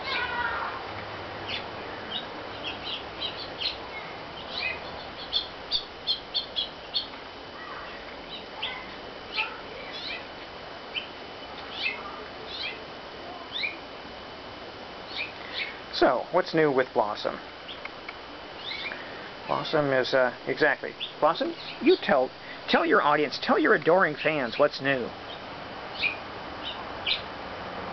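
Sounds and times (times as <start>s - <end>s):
small birds chirping: 0.0s - 14.0s, 14.9s - 27.4s.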